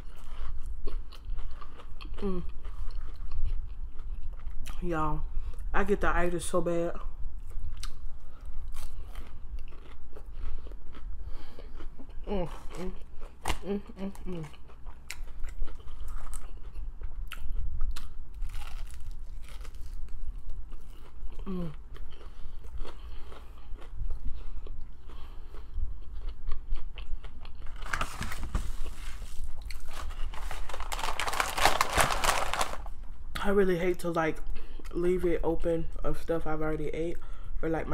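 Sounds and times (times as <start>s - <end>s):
person crunching fried chicken: 7.5s - 33.0s.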